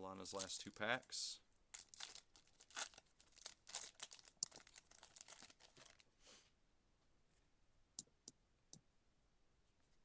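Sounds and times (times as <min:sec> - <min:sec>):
wrapper tearing and crinkling: 0:01.7 - 0:06.0.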